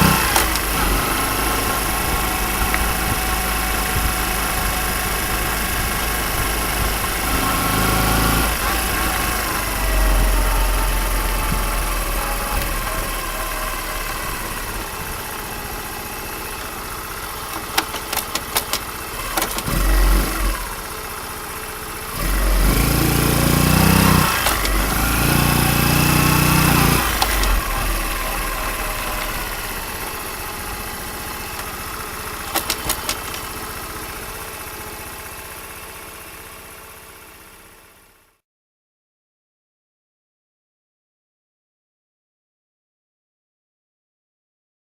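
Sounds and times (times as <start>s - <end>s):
sharp clicks: 0.0s - 7.5s, 17.3s - 20.6s, 24.0s - 30.2s, 31.3s - 33.6s
engine revving: 0.0s - 37.4s
motorcycle engine idling: 0.0s - 38.4s.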